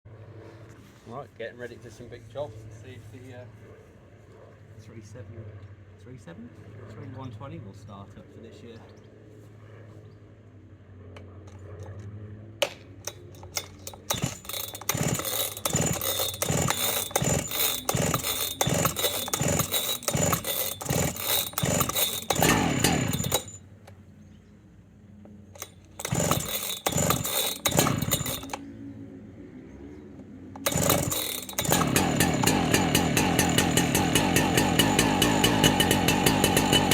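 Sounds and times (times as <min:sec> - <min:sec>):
chainsaw sputtering and revving: 0:13.0 - 0:23.6, 0:25.5 - 0:28.7, 0:30.6 - 0:36.9.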